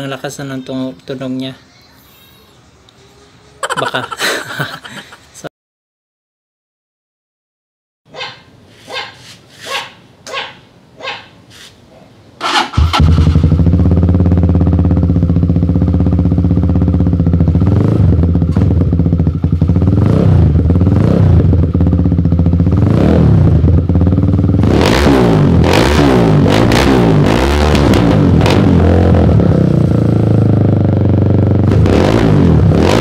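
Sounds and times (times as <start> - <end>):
dog barking: 8.1 - 11.4
motorcycle engine idling and revving: 12.4 - 33.0.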